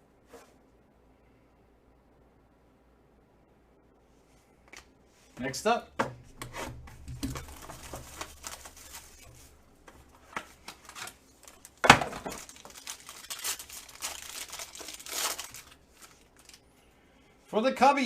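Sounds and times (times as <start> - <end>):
packaging crinkling: 6.3 - 16.7
packaging tearing: 6.4 - 16.6.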